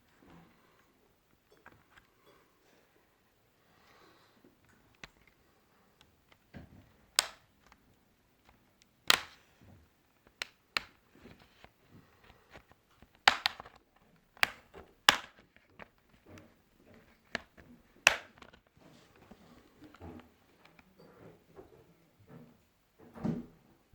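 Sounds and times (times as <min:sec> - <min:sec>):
plastic clicks and snaps: 0:06.0 - 0:09.5, 0:10.2 - 0:18.8.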